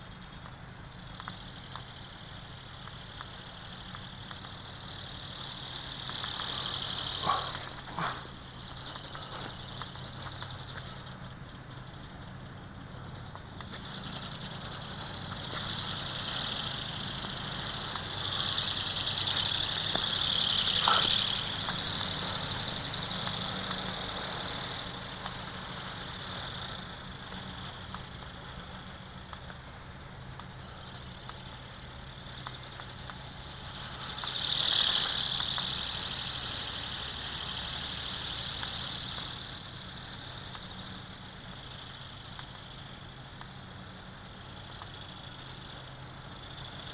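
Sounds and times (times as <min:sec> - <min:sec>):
low hum: 0:00.0 - 0:46.9
toy motor whining: 0:00.0 - 0:46.9.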